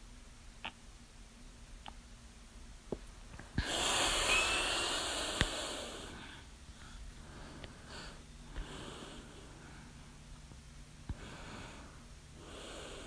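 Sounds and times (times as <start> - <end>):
loud noisy breath: 3.6 - 10.0, 11.1 - 13.0.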